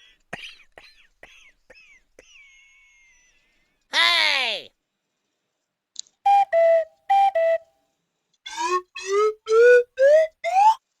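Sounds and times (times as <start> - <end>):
cartoon whistle notes: 6.3 - 7.7, 8.5 - 10.8
slide whistle glides: 6.3 - 7.7, 8.5 - 10.8.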